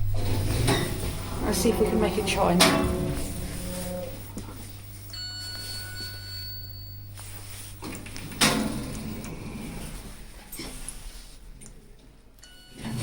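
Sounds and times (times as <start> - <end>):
lift car humming: 0.0 - 10.4
high electronic chime tone: 5.1 - 7.2.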